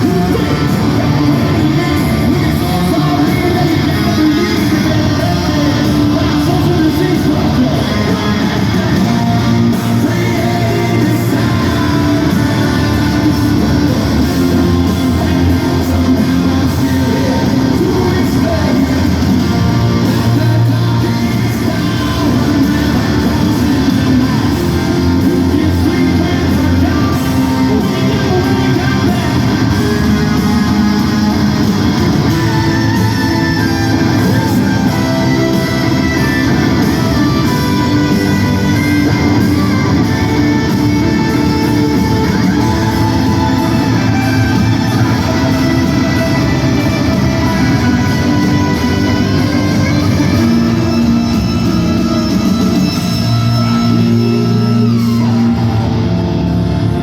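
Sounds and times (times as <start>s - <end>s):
bass guitar: 0.0s - 57.0s
distorted electric guitars: 0.0s - 57.0s
drums: 0.0s - 57.0s
person singing: 0.0s - 57.0s.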